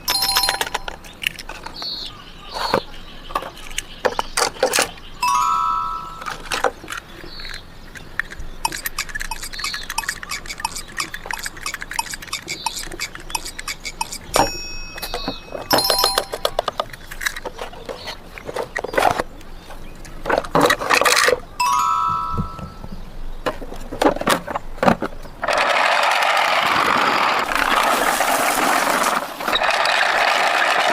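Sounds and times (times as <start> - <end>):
bell-like electronic toy tone: 0.0 - 1.0, 5.2 - 6.6, 14.0 - 16.7, 21.6 - 23.0
plastic toy cars clattering: 0.0 - 22.7, 23.4 - 30.9.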